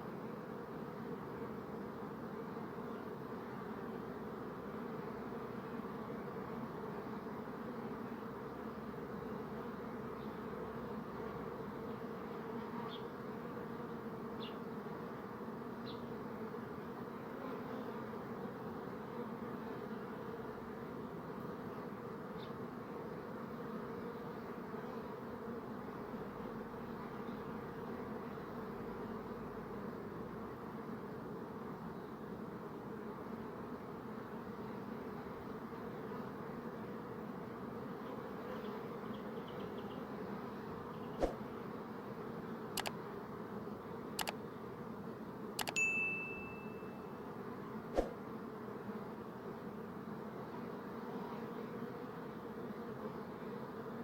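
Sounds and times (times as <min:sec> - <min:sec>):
bees buzzing: 0:00.1 - 0:45.7, 0:46.4 - 0:54.0
faint high chirps: 0:45.6 - 0:47.2.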